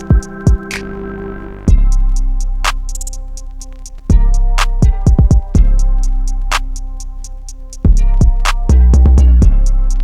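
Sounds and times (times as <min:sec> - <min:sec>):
kick drums: 0:00.0 - 0:00.8, 0:01.7 - 0:02.2, 0:04.1 - 0:05.8, 0:07.8 - 0:09.8
hi-hat ticks: 0:00.0 - 0:00.9, 0:01.7 - 0:10.0
deep sliding bass: 0:00.7 - 0:10.0.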